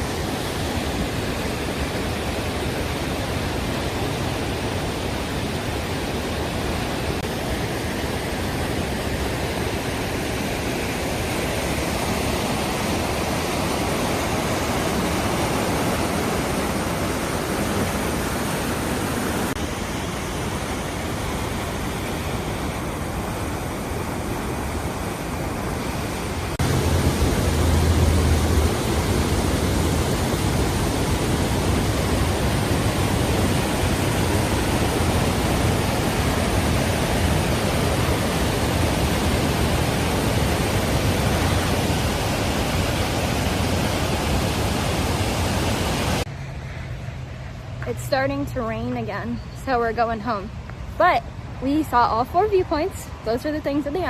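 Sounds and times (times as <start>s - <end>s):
river water roaring: 0.0s - 54.0s
low rumble: 26.6s - 31.3s.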